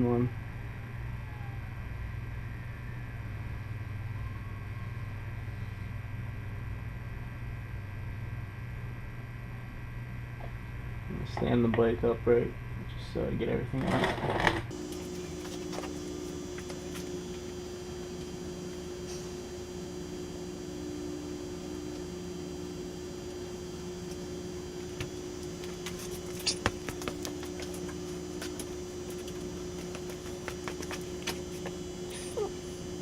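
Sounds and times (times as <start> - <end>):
low hum: 0.0 - 13.8, 14.6 - 33.0.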